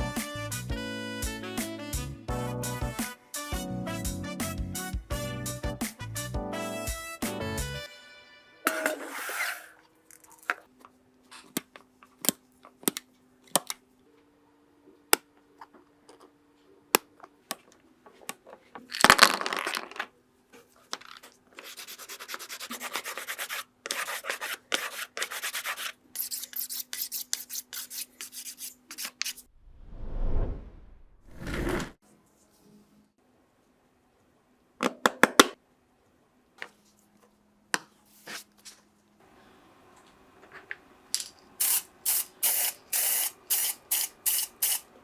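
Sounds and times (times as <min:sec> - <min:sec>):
loud scrape: 0:08.7 - 0:09.8, 0:29.7 - 0:32.0.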